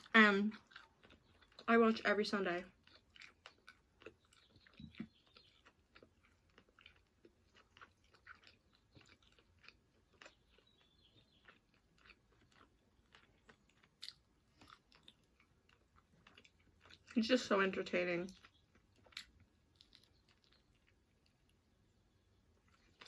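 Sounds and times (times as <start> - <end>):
chewing chicken wings: 0.0 - 17.2, 18.3 - 23.0.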